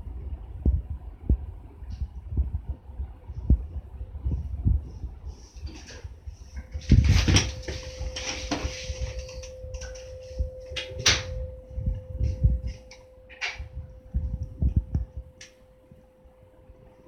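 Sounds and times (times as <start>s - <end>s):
steady hum: 0.0s - 17.0s
low irregular thumping: 6.1s - 15.9s.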